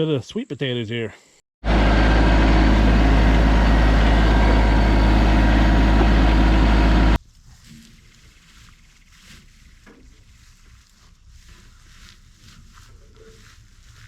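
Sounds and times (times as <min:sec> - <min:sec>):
tractor diesel engine running: 0:01.6 - 0:07.2.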